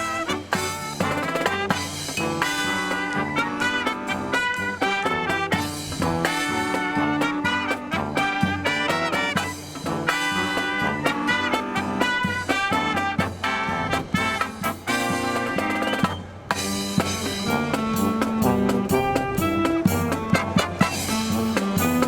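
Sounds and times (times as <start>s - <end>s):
marching brass band: 0.0s - 22.0s
wind noise on microphone: 13.5s - 22.0s.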